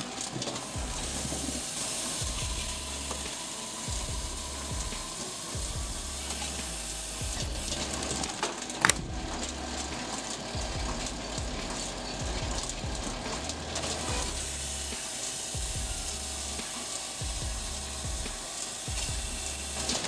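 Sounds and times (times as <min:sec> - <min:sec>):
sharp click: 0:08.8 - 0:09.1.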